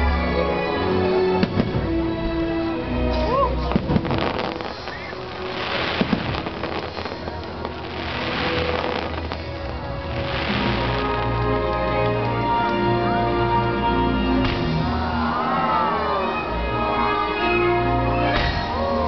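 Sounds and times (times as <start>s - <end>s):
music soundtrack: 0.0s - 19.0s
fireworks crackling: 3.5s - 19.0s
fireworks bangs: 3.7s - 12.3s, 14.4s - 15.2s.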